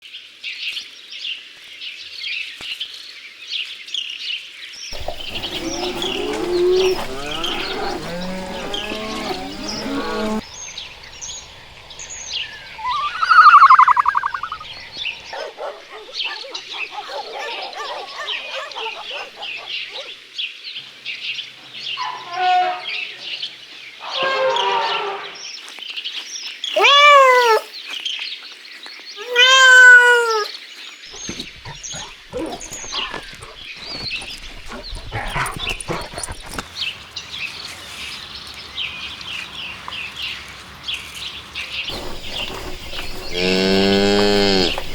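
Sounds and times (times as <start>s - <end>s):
small birds chirping: 4.9s - 20.1s, 25.6s - 44.9s
farm animals calling: 5.0s - 20.1s, 26.8s - 27.7s, 29.2s - 44.9s
loud short animal call: 12.0s - 15.0s, 26.8s - 27.7s, 29.2s - 30.5s.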